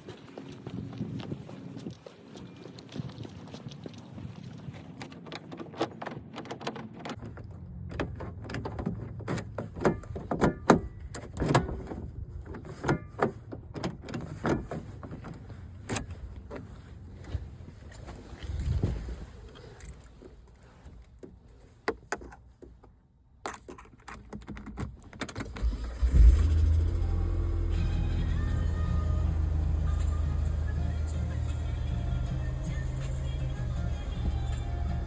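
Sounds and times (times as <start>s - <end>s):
low steady hum: 25.7s - 35.0s.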